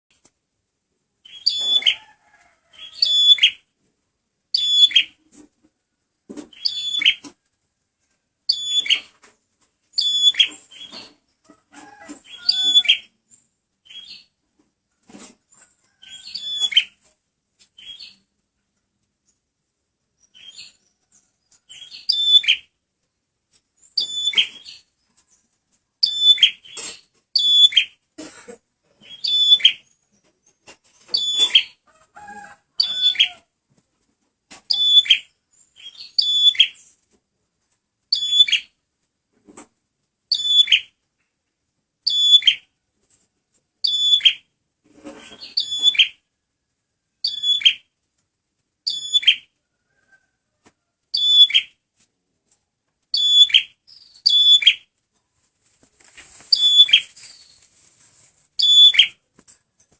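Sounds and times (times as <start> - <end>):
bird chirping call: 1.2 - 2.0, 2.8 - 3.6, 4.5 - 5.2, 6.5 - 7.3, 8.5 - 9.2, 10.0 - 11.2, 16.0 - 17.0, 21.7 - 22.7, 23.8 - 24.9, 26.0 - 28.0, 29.0 - 30.1, 31.1 - 31.8, 34.7 - 36.9, 38.1 - 38.7, 40.3 - 40.9, 42.1 - 42.7, 43.8 - 44.4, 45.3 - 46.2, 47.2 - 47.9, 48.9 - 49.5, 51.1 - 51.8, 53.1 - 54.9, 56.5 - 57.7, 58.6 - 59.2.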